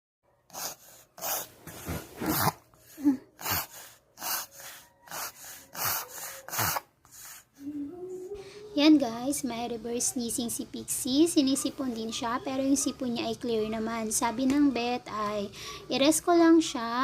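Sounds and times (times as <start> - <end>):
dog reverse sneezing: 0.5 - 2.6, 3.4 - 4.5, 5.1 - 7.5.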